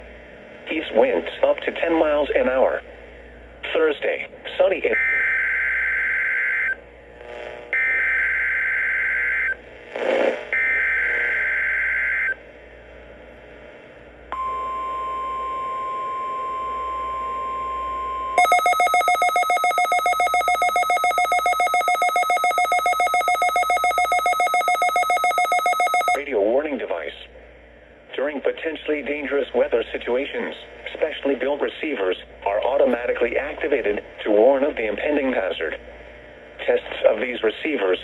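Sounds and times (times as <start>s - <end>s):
rapid pulsing alarm beeps: 18.4s - 26.2s
screechy digital data bursts: 18.4s - 26.2s
steady warning alarm tone: 18.4s - 26.2s.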